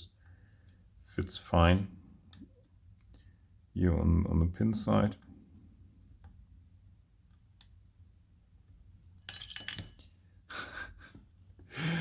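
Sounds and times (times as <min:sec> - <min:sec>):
metal wrench clinking against lock: 0:09.2 - 0:10.0
person sighing: 0:11.7 - 0:12.0.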